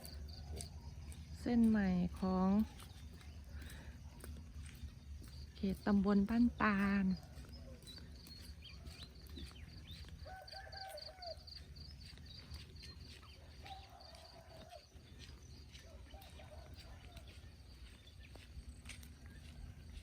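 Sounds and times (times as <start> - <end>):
longer bird calls: 6.9 - 20.0.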